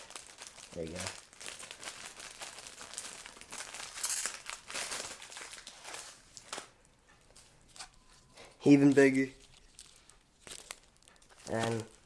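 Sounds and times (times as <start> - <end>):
packaging crinkling and rustling: 0.0 - 12.0.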